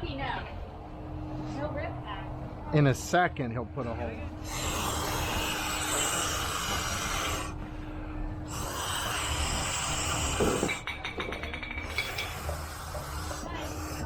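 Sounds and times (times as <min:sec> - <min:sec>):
air hissing from a pump: 0:04.4 - 0:07.7, 0:08.5 - 0:10.8, 0:11.8 - 0:14.0.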